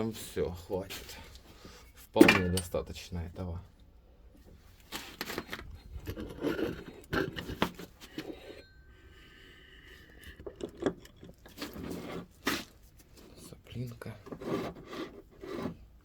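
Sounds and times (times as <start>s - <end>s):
scraping and light knocks: 4.4s - 16.0s.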